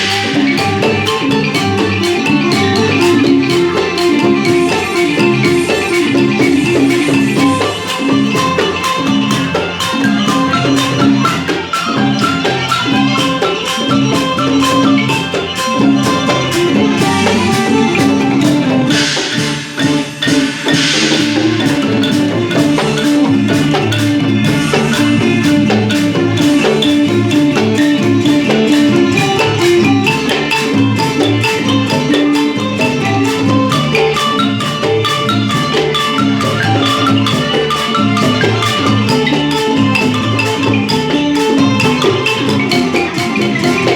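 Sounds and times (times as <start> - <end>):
folk dance music: 0.0 - 43.9
log xylophone melody: 0.0 - 43.9.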